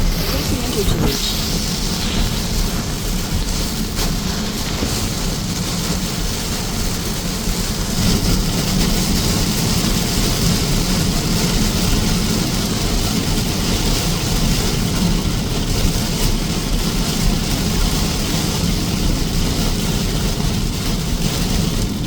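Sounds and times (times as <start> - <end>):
moving vehicle rumble: 0.0 - 12.3.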